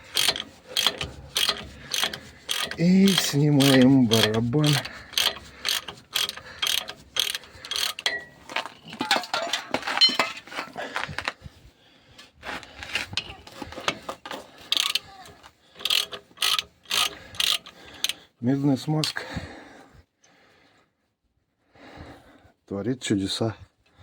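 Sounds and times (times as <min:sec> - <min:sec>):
ratchet wrench clicking: 0:00.0 - 0:08.2, 0:14.7 - 0:18.2.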